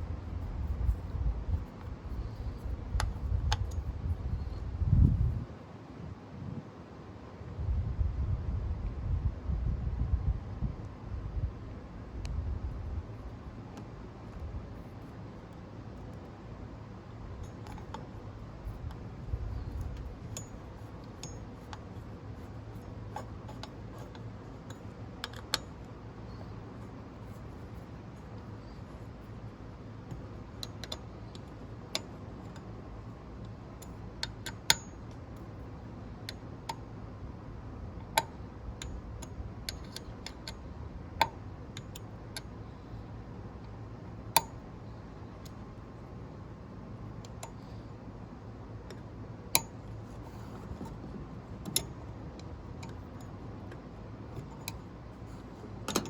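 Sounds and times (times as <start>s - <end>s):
low steady hum: 0.0s - 56.0s
metallic clicks and taps: 0.4s - 4.0s, 17.4s - 29.3s, 30.1s - 32.7s, 33.4s - 35.6s, 38.0s - 40.6s, 48.9s - 56.0s.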